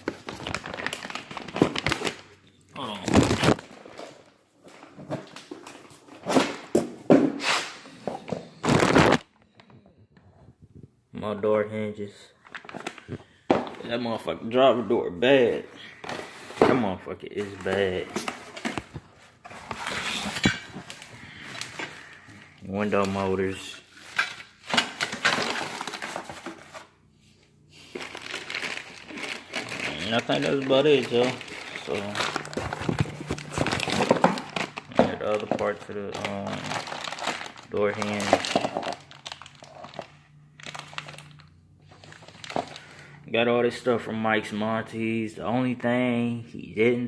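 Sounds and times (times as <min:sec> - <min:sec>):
packaging rustling and crinkling: 0:00.0 - 0:02.4, 0:03.0 - 0:06.8, 0:08.6 - 0:09.3, 0:17.4 - 0:27.0, 0:27.8 - 0:43.0.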